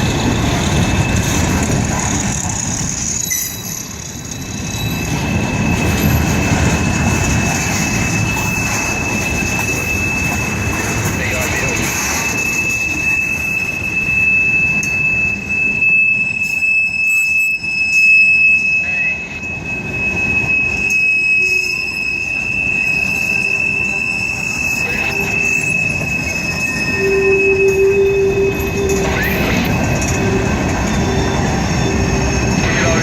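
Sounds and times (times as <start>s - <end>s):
train rumble: 0.0s - 33.0s
train wheels squealing: 0.0s - 33.0s
short low squeal: 12.2s - 32.4s.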